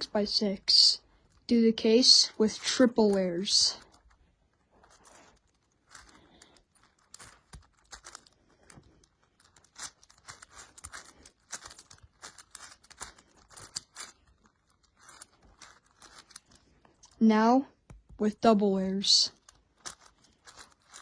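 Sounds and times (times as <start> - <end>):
puzzle cube plastic clicking: 9.4 - 17.2, 19.4 - 21.0.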